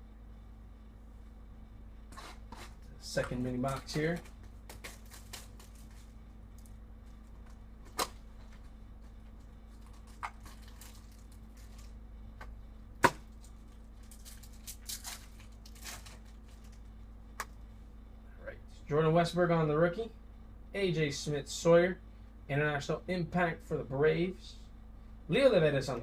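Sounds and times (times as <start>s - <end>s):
cardboard and wrapper tearing: 3.7s - 6.1s, 9.8s - 11.9s, 14.0s - 16.8s.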